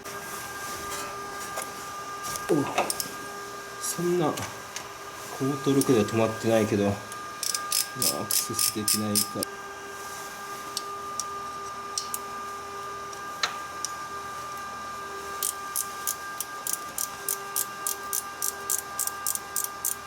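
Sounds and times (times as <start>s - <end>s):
ratchet wrench clicking: 7.4s - 9.4s, 15.4s - 20.0s.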